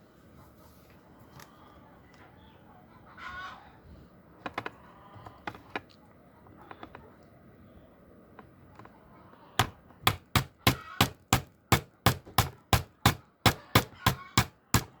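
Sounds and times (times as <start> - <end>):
sharp knocks: 9.6 - 15.0.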